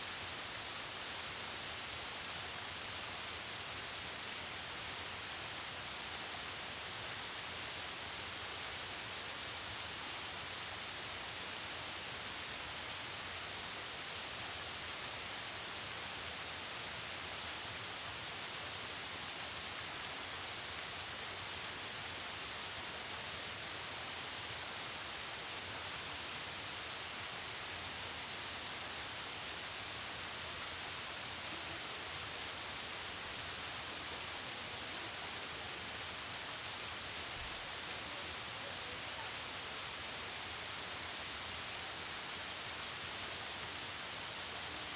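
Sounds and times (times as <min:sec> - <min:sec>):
waterfall rushing over rocks: 0:00.0 - 0:44.9.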